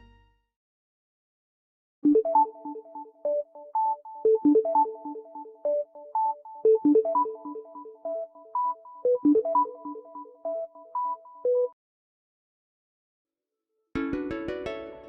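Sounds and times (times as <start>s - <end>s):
synthesized ringtone melody: 2.1s - 11.8s.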